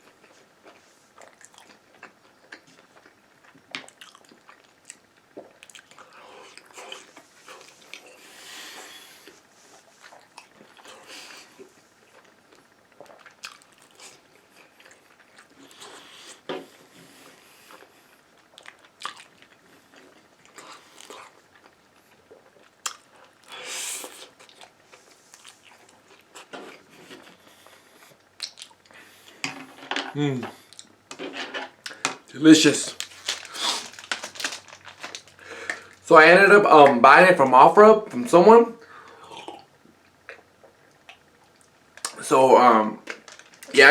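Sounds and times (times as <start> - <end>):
person chewing food: 0.0 - 29.5, 31.7 - 32.3, 32.9 - 36.0.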